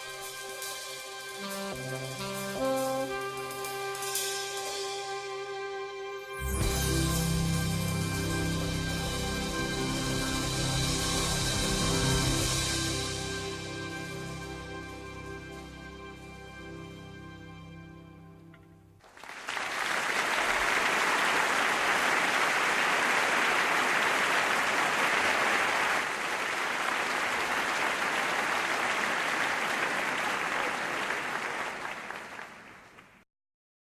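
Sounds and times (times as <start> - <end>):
jazz music: 0.0 - 19.0
audience applause: 19.0 - 33.2.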